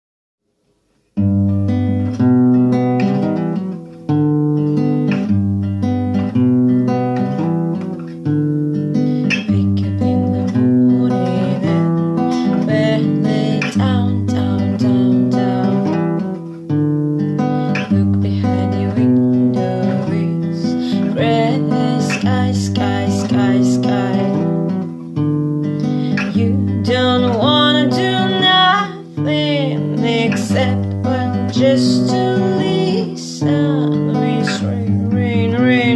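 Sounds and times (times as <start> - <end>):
acoustic guitar strumming: 1.1 - 35.9
person singing: 9.2 - 16.2, 17.4 - 24.6, 25.8 - 35.9.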